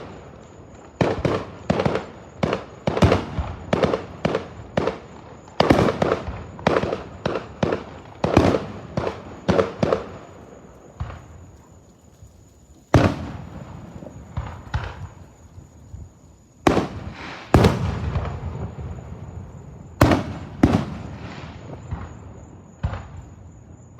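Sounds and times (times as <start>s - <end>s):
loud explosive bangs: 16.7s - 22.2s.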